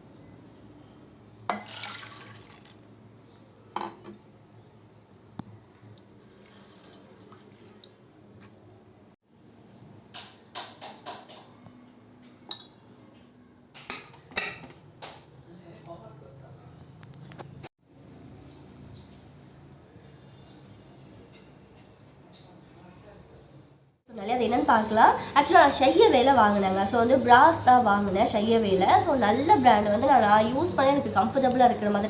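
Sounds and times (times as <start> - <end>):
pots and utensils clinking: 10.1 - 11.6, 12.2 - 12.8, 13.7 - 15.3.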